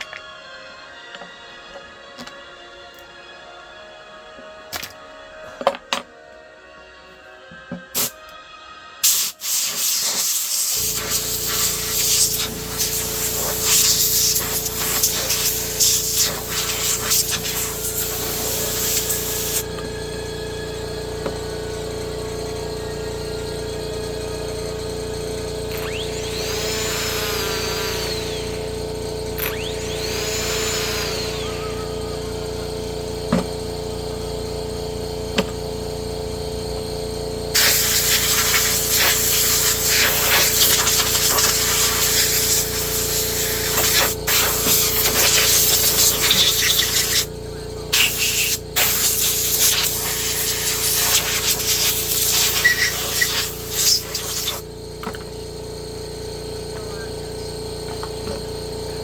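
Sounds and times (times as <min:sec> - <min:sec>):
compressed air hissing: 0:08.0 - 0:08.2, 0:09.0 - 0:19.8, 0:24.5 - 0:34.0, 0:37.5 - 0:54.8.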